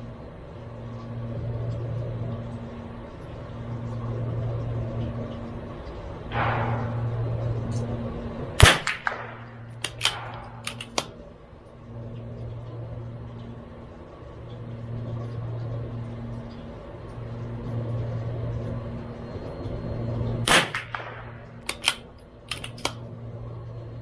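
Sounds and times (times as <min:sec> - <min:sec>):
steady low hum: 0:00.0 - 0:24.0
rifle shot: 0:06.3 - 0:07.4, 0:08.6 - 0:11.2, 0:20.5 - 0:23.0
rifle bolt metallic clicks: 0:08.6 - 0:11.2, 0:20.5 - 0:23.0.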